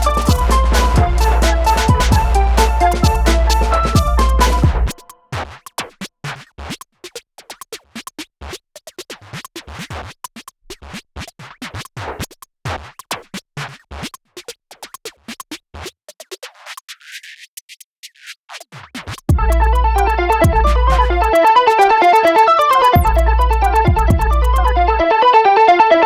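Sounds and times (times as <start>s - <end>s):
stuttering electronic dance music: 0.0s - 5.9s, 18.5s - 25.4s.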